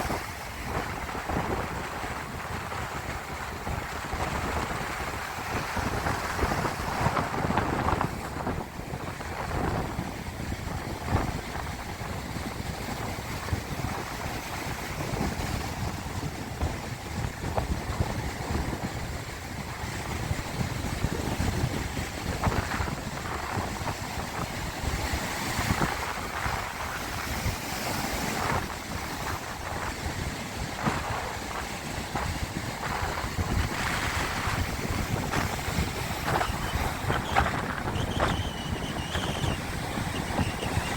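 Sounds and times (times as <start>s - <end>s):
wind buffeting microphone: 0.0s - 40.9s
sea waves splashing: 22.4s - 40.9s.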